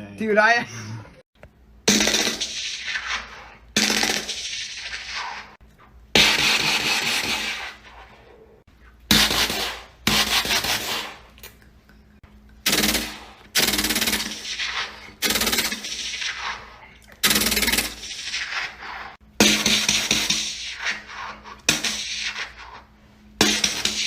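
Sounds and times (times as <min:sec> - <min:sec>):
person imitating gunfire: 0:01.9 - 0:03.2, 0:12.6 - 0:16.2.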